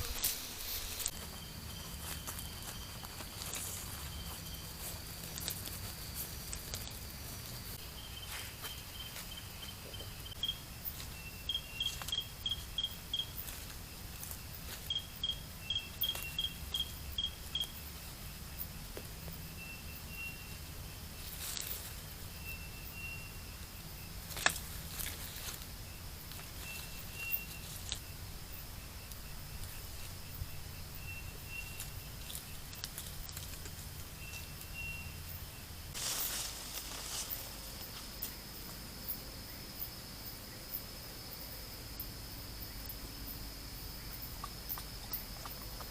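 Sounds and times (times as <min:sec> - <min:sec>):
insect chirping: 0:00.0 - 0:45.9
steady low hum: 0:00.0 - 0:45.9.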